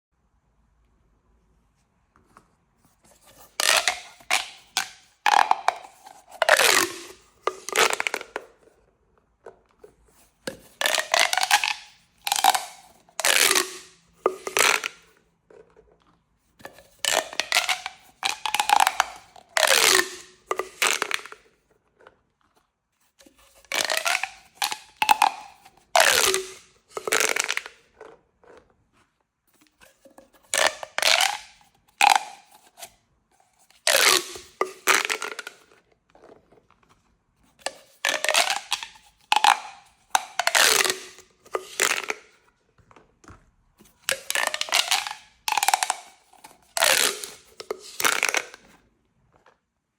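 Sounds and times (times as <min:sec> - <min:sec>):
plastic pop tubes ratcheting clicks: 0:03.6 - 0:08.5, 0:10.5 - 0:15.1, 0:16.7 - 0:21.4, 0:23.7 - 0:27.8, 0:30.5 - 0:32.6, 0:33.8 - 0:35.8, 0:37.6 - 0:42.3, 0:44.0 - 0:48.7.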